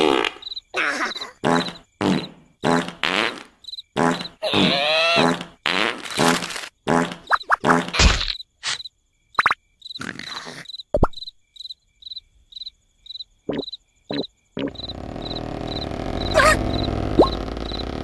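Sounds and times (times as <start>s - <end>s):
cricket chirping: 0.0s - 18.0s
cartoon plops and squeaks: 4.1s - 5.6s, 10.3s - 11.3s, 13.5s - 14.8s, 16.2s - 17.4s
sliding squeal: 14.7s - 18.0s.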